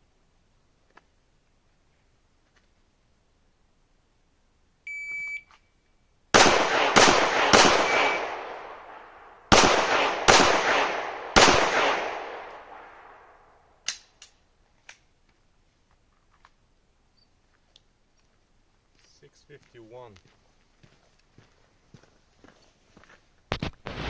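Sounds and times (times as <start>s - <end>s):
shot timer beep: 4.9s - 5.5s
pistol shots echoing: 6.3s - 13.6s
gun handling clicks: 13.8s - 15.4s.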